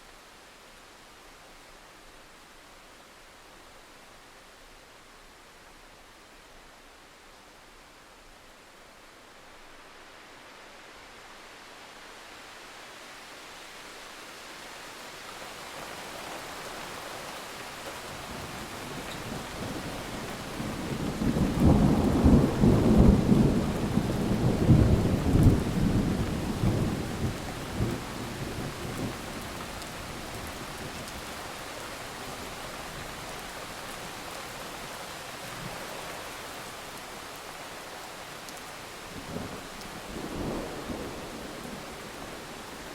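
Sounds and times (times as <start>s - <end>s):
steady rain hiss: 0.0s - 42.9s
rolling thunder rumble: 20.5s - 29.5s.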